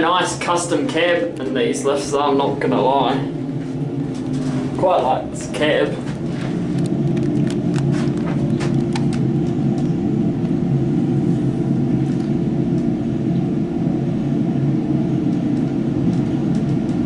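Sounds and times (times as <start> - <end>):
lift car rumbling: 0.0 - 13.5.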